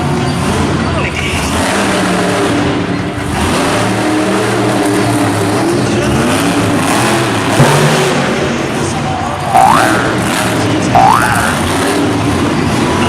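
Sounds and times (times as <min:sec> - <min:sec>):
monster truck engine revving: 0:00.0 - 0:13.0.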